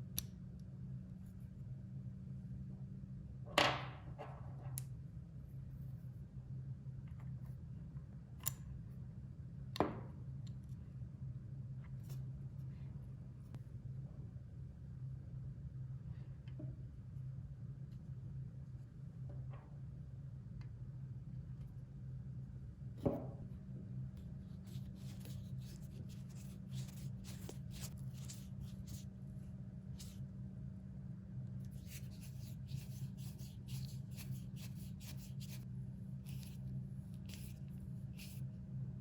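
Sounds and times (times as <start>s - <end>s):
steady low hum: 0.0s - 39.0s
rubbing and scraping by hand: 24.4s - 29.1s, 31.7s - 36.6s.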